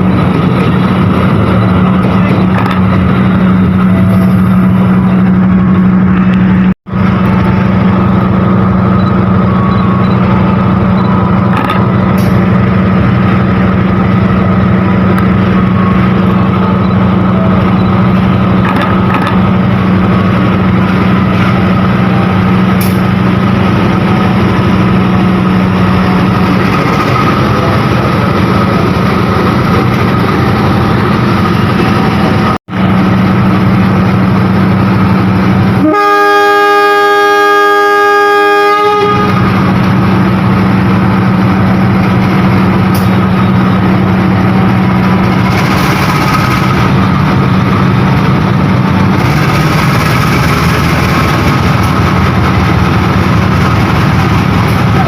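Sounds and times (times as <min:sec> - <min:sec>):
diesel locomotive engine drone: 0:00.0 - 0:55.0
locomotive horn blast: 0:35.8 - 0:39.6.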